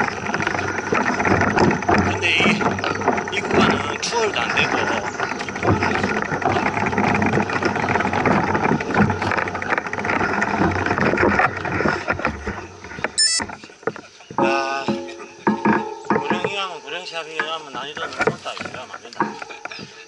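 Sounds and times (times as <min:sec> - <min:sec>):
bike clattering over rough trail: 0:00.0 - 0:20.0
high squeal: 0:13.2 - 0:13.5.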